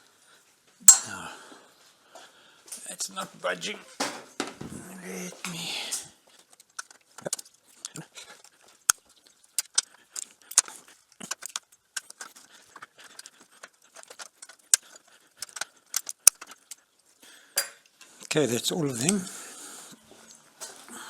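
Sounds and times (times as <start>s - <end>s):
hand tools clinking on metal: 0.8s - 1.3s, 17.5s - 19.3s.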